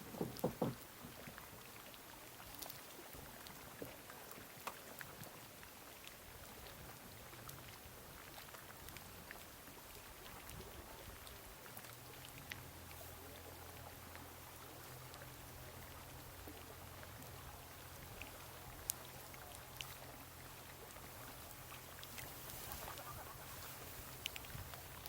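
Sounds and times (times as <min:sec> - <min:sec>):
low steady hum: 0:06.2 - 0:25.0.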